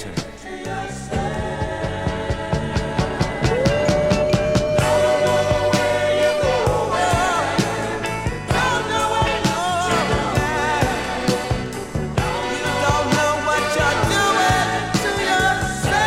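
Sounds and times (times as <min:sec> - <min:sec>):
bass: 0:00.0 - 0:16.0
drums: 0:00.0 - 0:16.0
man singing soul: 0:03.3 - 0:16.0.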